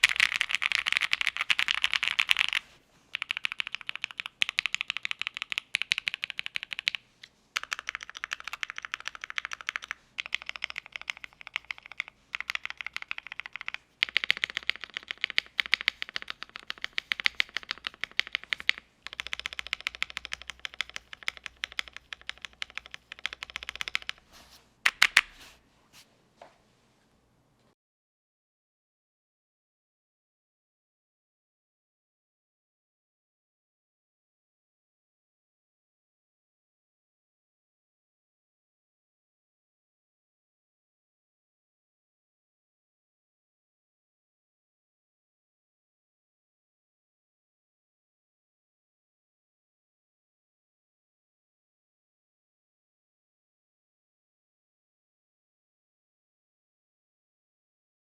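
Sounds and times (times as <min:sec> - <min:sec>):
typing on mechanical keyboard: 0:00.0 - 0:07.0, 0:07.6 - 0:24.3.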